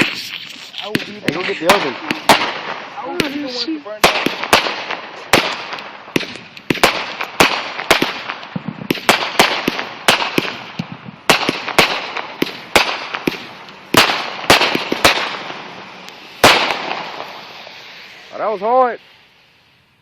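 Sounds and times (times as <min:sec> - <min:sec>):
fireworks bangs: 0:00.0 - 0:19.8
fireworks crackling hiss: 0:00.0 - 0:20.0.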